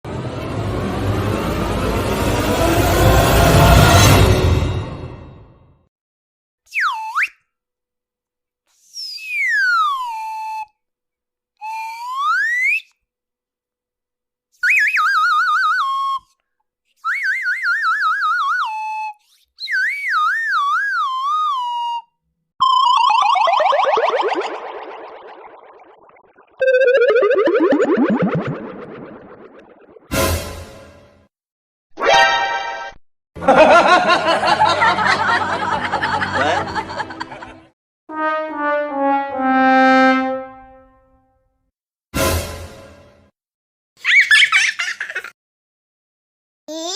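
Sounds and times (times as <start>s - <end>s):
busy dense sound effect: 0.0s - 5.6s, 22.6s - 30.5s, 38.1s - 40.8s
warbling whistle-like tones: 22.6s - 30.1s
sad trombone sound effect: 38.1s - 41.0s.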